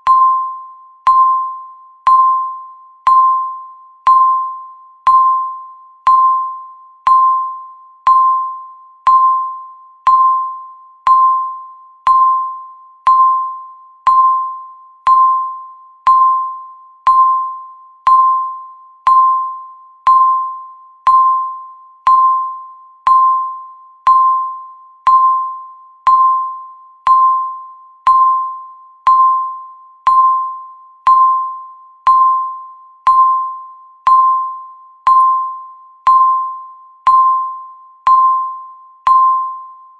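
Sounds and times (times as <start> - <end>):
countdown timer beeping: 0.0 - 39.9.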